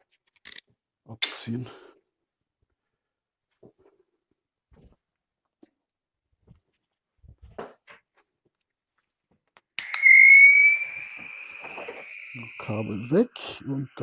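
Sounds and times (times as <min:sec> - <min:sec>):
hiss: 0:09.8 - 0:13.6
welding tool high whine: 0:09.8 - 0:14.0.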